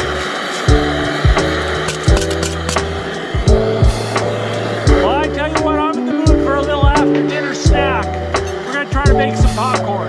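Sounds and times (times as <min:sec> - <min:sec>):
background music with steady beat: 0:00.0 - 0:10.0
deep thumps: 0:02.1 - 0:05.0.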